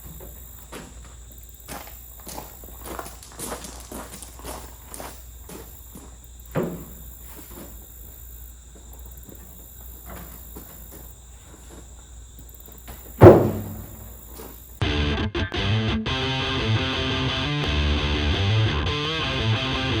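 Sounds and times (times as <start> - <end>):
footsteps: 0.0 - 14.7
heavy thud with ringing tail: 13.2 - 14.2.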